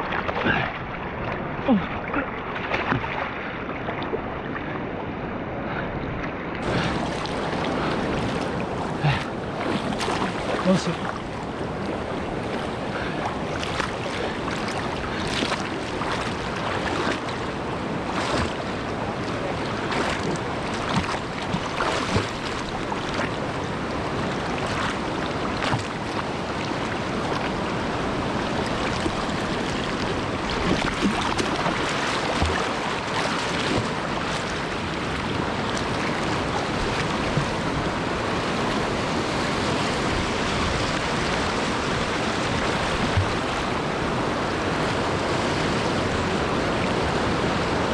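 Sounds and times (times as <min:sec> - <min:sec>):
sharp water splashes: 0:00.0 - 0:04.3, 0:06.6 - 0:11.4, 0:12.4 - 0:27.6, 0:28.5 - 0:37.9, 0:40.1 - 0:43.9
rushing river whitewater: 0:00.0 - 0:47.9.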